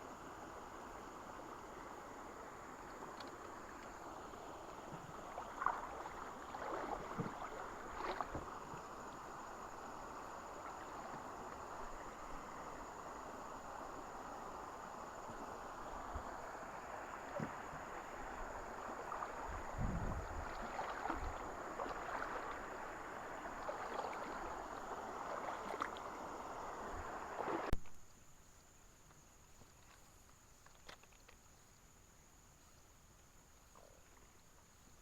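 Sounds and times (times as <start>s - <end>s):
river water splashing around boat: 0.0s - 27.8s.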